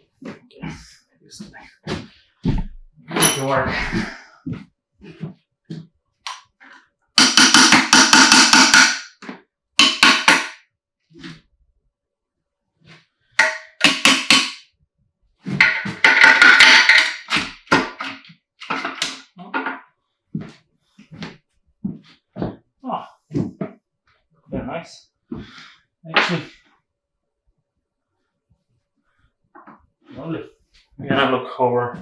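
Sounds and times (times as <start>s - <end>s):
metal tool striking metal: 3.1s - 4.1s, 7.2s - 9.2s, 9.8s - 10.6s.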